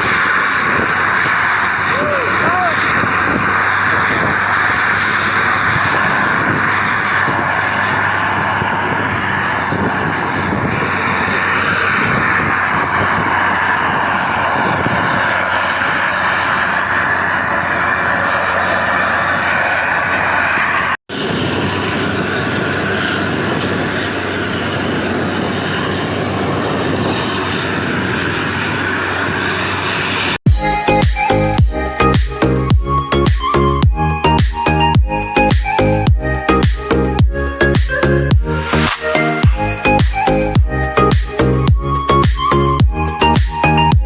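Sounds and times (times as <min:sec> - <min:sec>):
vehicle engine and road noise: 0:00.0 - 0:44.0.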